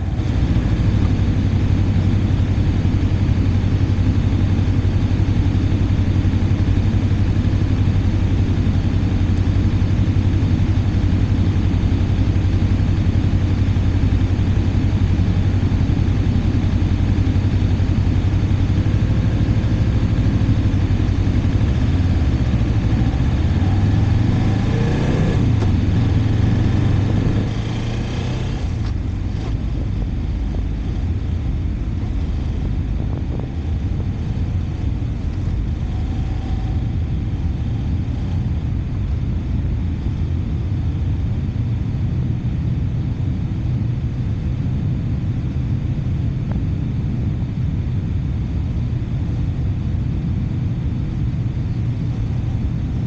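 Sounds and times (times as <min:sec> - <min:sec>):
motorcycle engine revving: 0:00.0 - 0:29.8
wind and road noise: 0:00.0 - 0:53.0.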